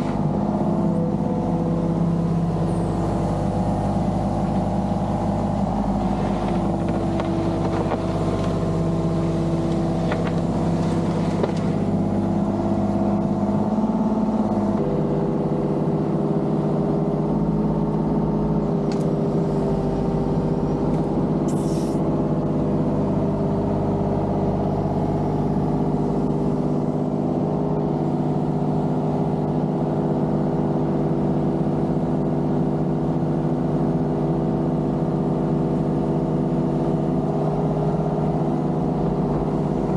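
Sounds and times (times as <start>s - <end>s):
diesel engine running: 0.0s - 39.9s
short hiss: 21.5s - 22.0s.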